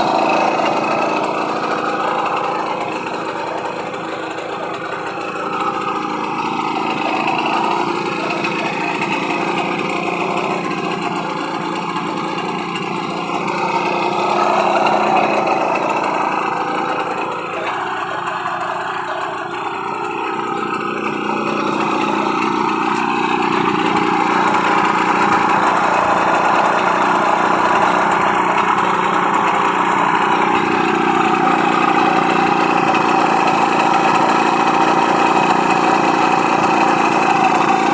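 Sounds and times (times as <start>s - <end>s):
moped engine running: 0.0s - 37.9s.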